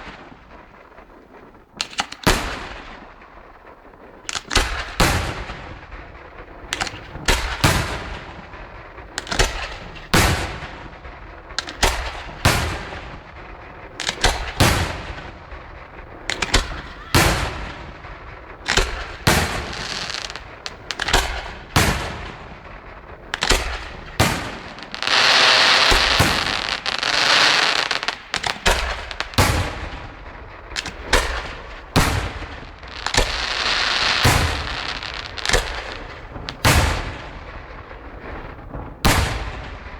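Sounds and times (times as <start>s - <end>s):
dense fireworks crackle: 0.0s - 39.9s
firework shell bursts: 16.2s - 38.2s.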